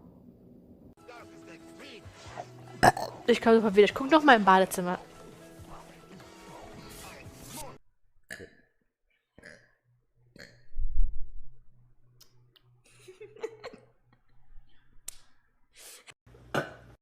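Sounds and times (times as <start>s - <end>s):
woman burping: 2.8s - 3.3s.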